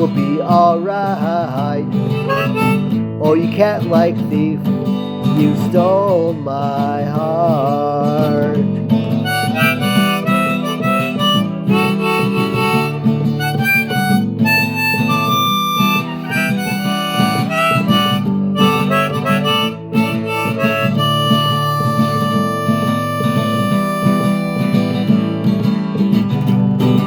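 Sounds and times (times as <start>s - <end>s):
strummed acoustic guitar: 0.0s - 27.0s
harmonica solo: 2.0s - 3.0s, 9.1s - 25.8s.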